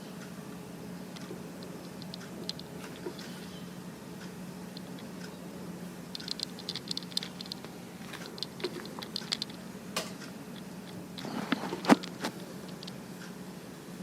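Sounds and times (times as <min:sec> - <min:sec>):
electric fan motor humming: 0:00.0 - 0:14.0
light clicks and ticks: 0:01.2 - 0:03.4, 0:06.1 - 0:09.6.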